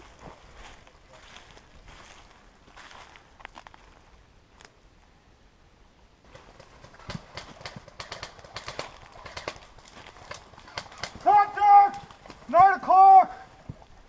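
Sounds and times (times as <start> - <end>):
footsteps on gravel: 0.0 - 4.0, 8.8 - 12.6.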